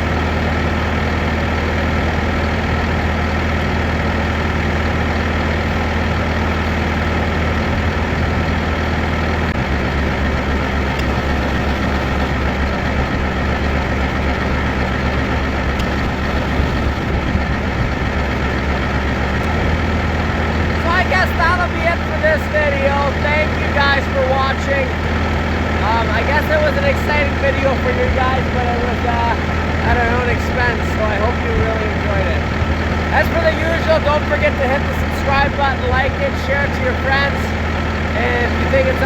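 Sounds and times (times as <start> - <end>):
heavy engine droning: 0.0 - 39.0.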